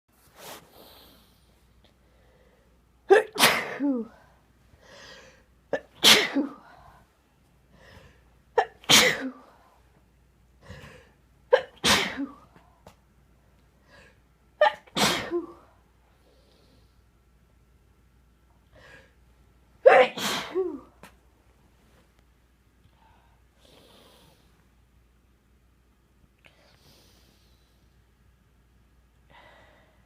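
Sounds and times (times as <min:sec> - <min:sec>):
person sneezing: 0:03.1 - 0:04.2, 0:05.7 - 0:06.7, 0:08.6 - 0:09.5, 0:11.5 - 0:12.5, 0:14.6 - 0:15.7, 0:19.8 - 0:21.0.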